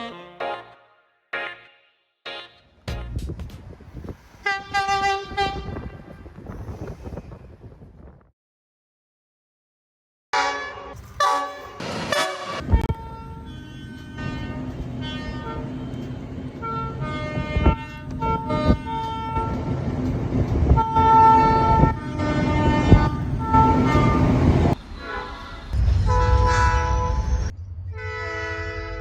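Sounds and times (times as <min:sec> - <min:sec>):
train rumbling: 0:02.9 - 0:08.3, 0:11.0 - 0:29.0
train horn blasts: 0:04.4 - 0:06.4, 0:10.4 - 0:19.7, 0:20.7 - 0:29.0.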